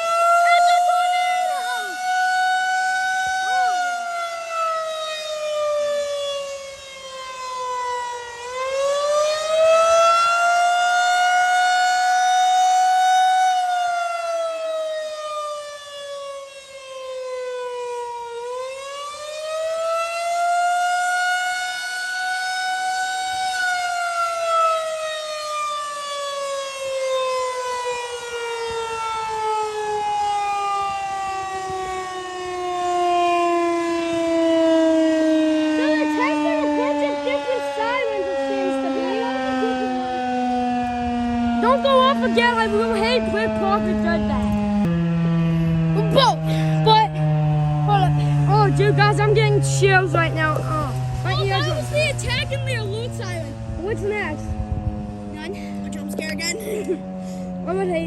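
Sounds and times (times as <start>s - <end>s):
tornado warning siren wailing: 0.0s - 58.0s.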